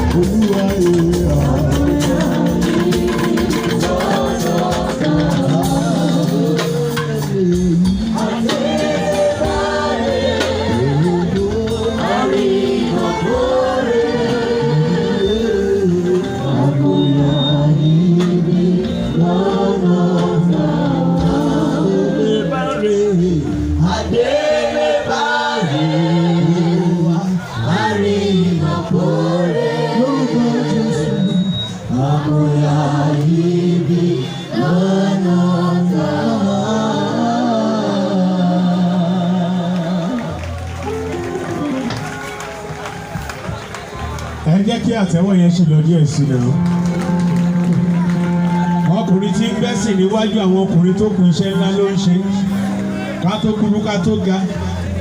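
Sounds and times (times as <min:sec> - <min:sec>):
percussion: 0:00.0 - 0:21.9, 0:39.8 - 0:55.0
choir singing gospel: 0:00.0 - 0:44.3.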